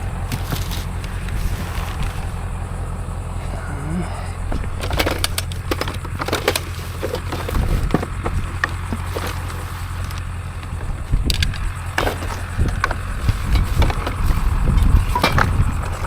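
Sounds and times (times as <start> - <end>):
low vehicle rumble: 0.0 - 16.0
sharp clicks and clanks: 4.5 - 16.0.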